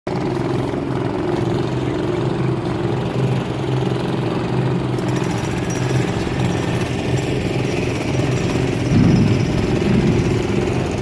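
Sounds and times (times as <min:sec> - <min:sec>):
engine running steadily: 0:00.1 - 0:11.0.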